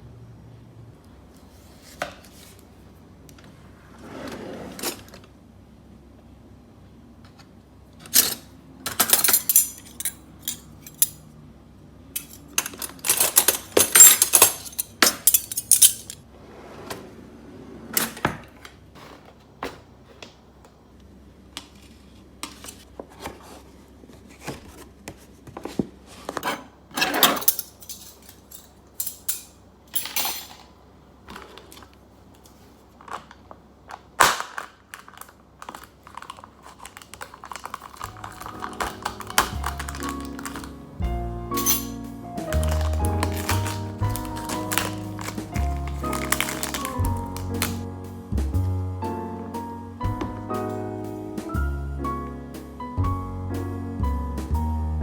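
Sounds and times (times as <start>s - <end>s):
dishes and cutlery clinking: 8.1s - 11.2s, 12.2s - 16.2s, 26.5s - 30.7s, 37.5s - 40.8s, 41.5s - 47.8s.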